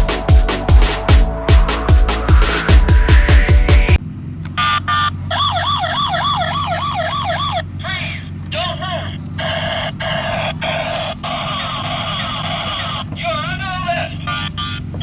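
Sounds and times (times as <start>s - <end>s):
toy siren wailing: 4.6s - 15.0s.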